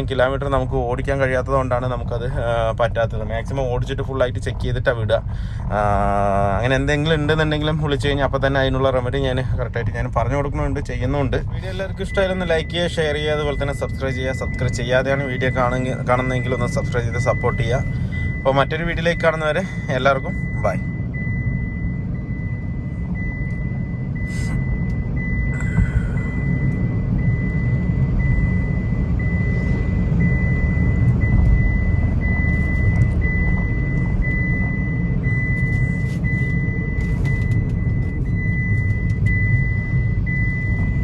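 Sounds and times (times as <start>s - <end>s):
car engine and road noise: 0.0s - 41.0s
high electronic beep: 11.5s - 41.0s.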